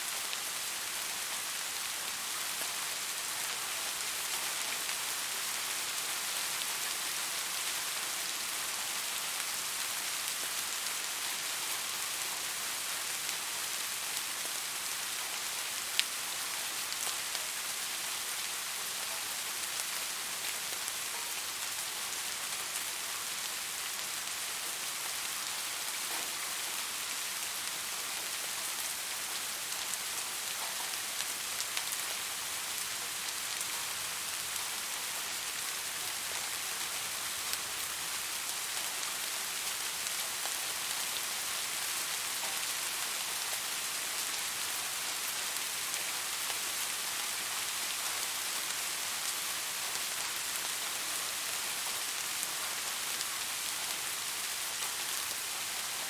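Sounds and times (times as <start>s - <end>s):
soft steady rain: 0.0s - 56.0s.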